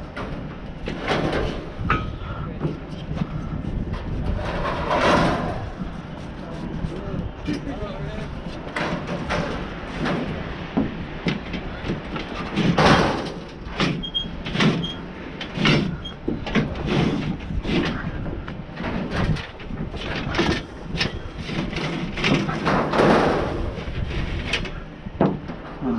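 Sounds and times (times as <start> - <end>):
steady low rumble: 0.0 - 25.9
metal junk clanking and banging: 4.3 - 5.7, 11.2 - 25.8.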